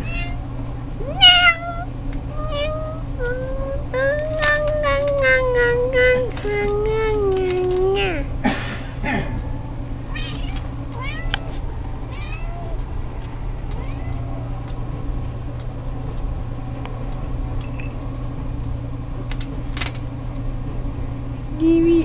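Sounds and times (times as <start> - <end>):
cat mewing: 0.0 - 0.4, 1.0 - 8.3, 10.1 - 12.8, 13.8 - 14.5
steady low hum: 0.0 - 22.0.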